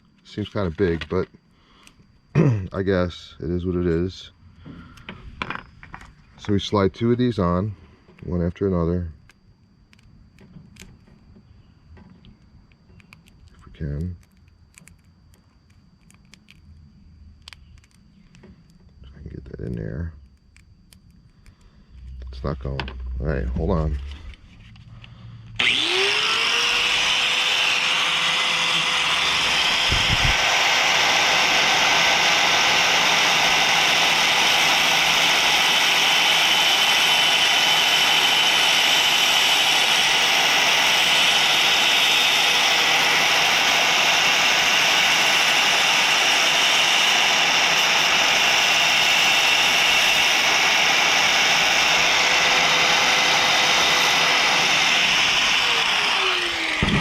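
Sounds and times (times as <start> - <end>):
electric grinder whining: 25.1 - 57.0.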